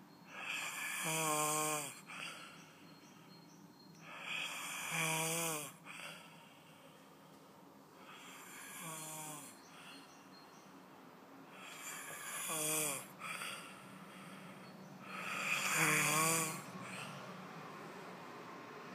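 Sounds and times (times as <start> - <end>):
person snoring: 0.3 - 2.4, 4.1 - 6.2, 8.0 - 9.9, 11.5 - 14.3, 15.0 - 17.2.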